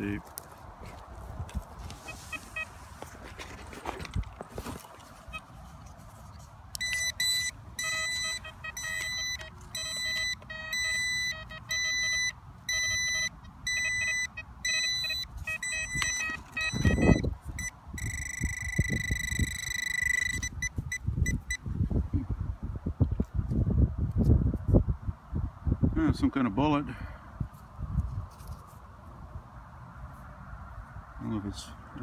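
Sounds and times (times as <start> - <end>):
metal detector tone beeping: 2.0 - 2.8, 5.3 - 5.5, 6.8 - 21.6.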